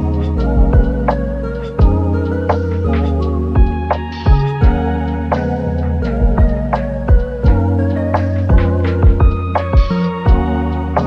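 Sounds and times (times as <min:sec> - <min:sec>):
deep bass line: 0:00.0 - 0:11.0
organ-like keyboard chords: 0:00.0 - 0:11.0
drum hits: 0:00.6 - 0:01.0, 0:01.8 - 0:02.0, 0:03.6 - 0:04.8, 0:06.2 - 0:07.7, 0:08.5 - 0:10.5.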